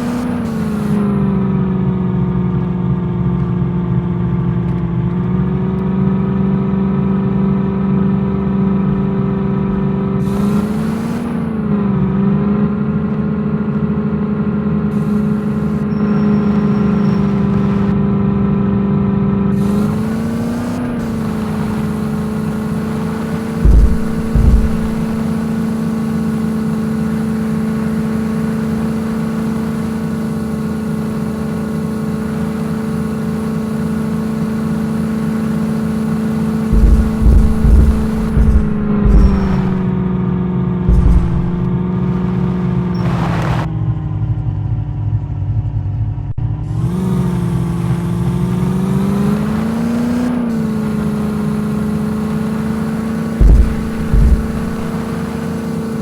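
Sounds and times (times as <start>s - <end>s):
engine running and revving: 0.0s - 56.0s
loud knocks: 8.7s - 11.6s, 23.6s - 25.3s, 36.7s - 40.0s, 40.9s - 42.9s, 53.4s - 55.4s.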